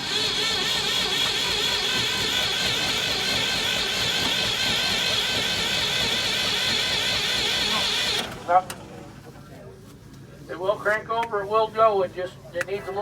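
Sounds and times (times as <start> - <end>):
engine cranked by electric starter: 0.0 - 9.3.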